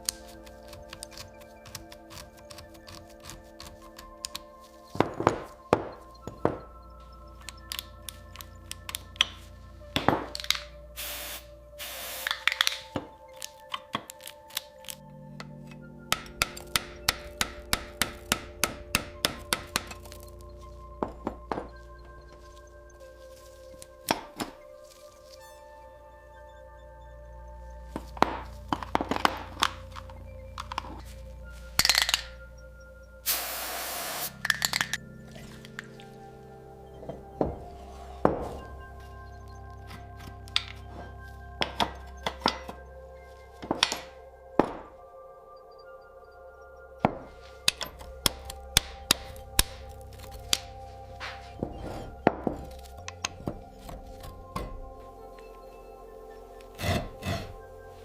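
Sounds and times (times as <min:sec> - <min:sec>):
background music: 0:00.0 - 0:58.0
tools knocking and clinking: 0:15.4 - 0:20.3, 0:31.8 - 0:32.4, 0:39.8 - 0:42.8, 0:43.6 - 0:44.9, 0:47.0 - 0:55.5
metal parts clinking: 0:31.8 - 0:32.4, 0:34.4 - 0:35.9.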